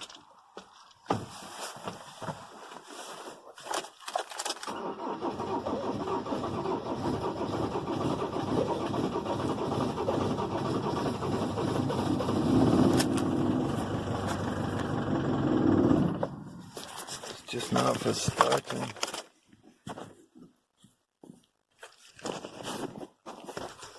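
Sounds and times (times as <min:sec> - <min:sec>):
diesel engine cranking: 0:04.3 - 0:16.7.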